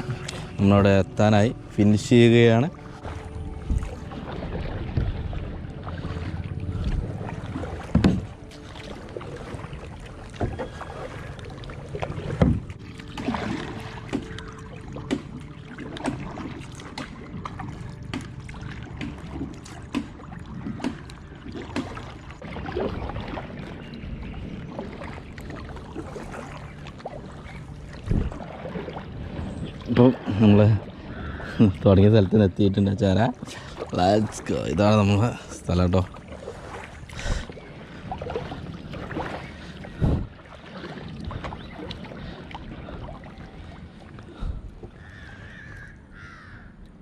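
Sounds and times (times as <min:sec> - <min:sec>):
paddle splashing in water: 0:02.5 - 0:32.2, 0:33.1 - 0:46.7
wind on microphone: 0:27.9 - 0:31.7, 0:37.2 - 0:43.0.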